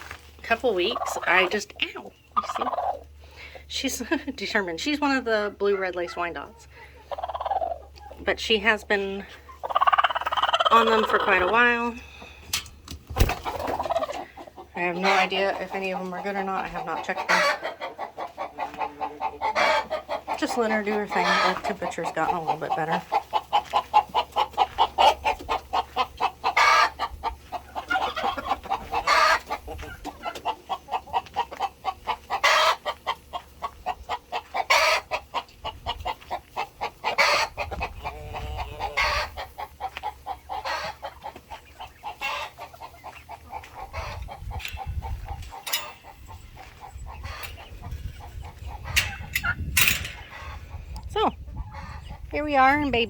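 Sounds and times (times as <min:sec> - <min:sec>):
chickens clucking: 0:00.0 - 0:53.0
loud chicken calls: 0:05.6 - 0:08.2, 0:09.3 - 0:12.4, 0:13.2 - 0:15.7, 0:16.3 - 0:49.5.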